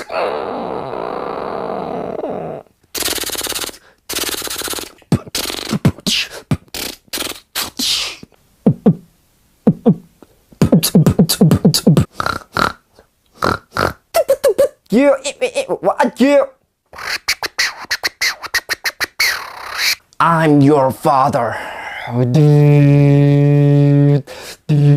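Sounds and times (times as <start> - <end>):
strained vocal sound: 0.0 - 9.0, 10.6 - 14.5
buzzing mouth sounds: 0.0 - 14.8, 16.9 - 20.0, 22.4 - 24.9
mouth clicks and chirps: 17.0 - 20.1.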